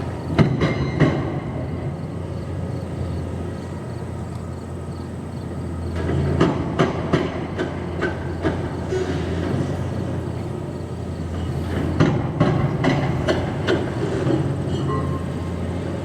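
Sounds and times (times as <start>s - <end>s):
metal clanks and knocks: 0.0s - 1.8s, 6.0s - 10.5s, 11.2s - 15.7s
demolition machinery humming: 0.0s - 16.0s.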